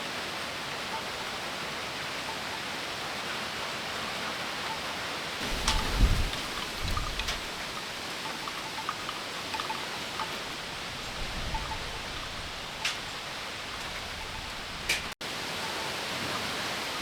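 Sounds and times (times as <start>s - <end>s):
steady rain falling: 0.0s - 17.0s
raindrops ticking: 5.4s - 15.2s.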